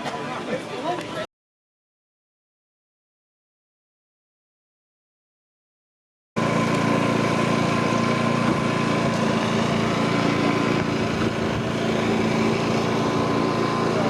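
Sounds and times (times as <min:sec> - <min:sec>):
machine droning with high whine: 0:06.4 - 0:14.0.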